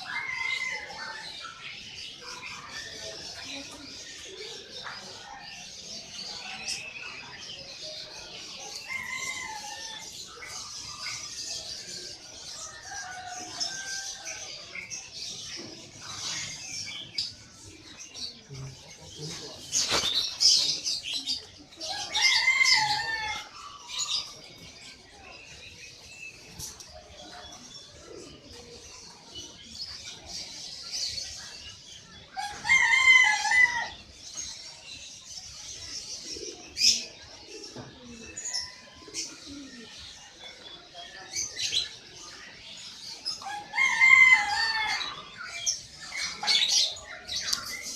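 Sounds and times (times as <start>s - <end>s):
small birds chirping: 0.0s - 47.9s
rooster crowing: 22.0s - 23.5s.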